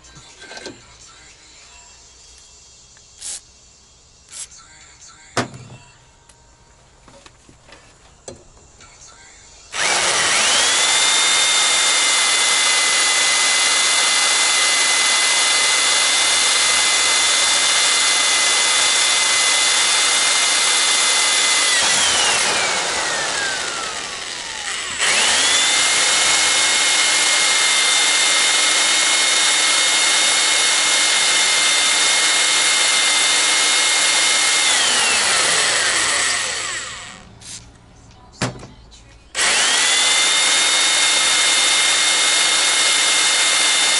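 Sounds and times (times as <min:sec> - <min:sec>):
power tool motor whining: 0:03.2 - 0:03.4, 0:09.6 - 0:37.6, 0:39.4 - 0:43.9.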